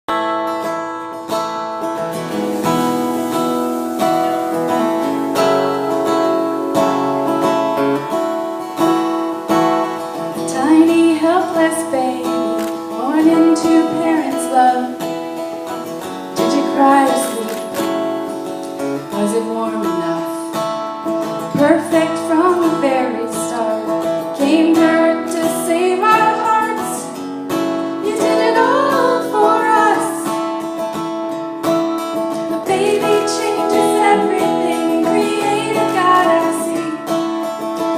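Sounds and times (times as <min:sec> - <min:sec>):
acoustic guitar: 0:00.1 - 0:37.9
woman singing: 0:10.4 - 0:15.1, 0:16.4 - 0:17.7, 0:19.1 - 0:20.6, 0:21.5 - 0:27.2, 0:27.9 - 0:30.4, 0:32.4 - 0:37.9.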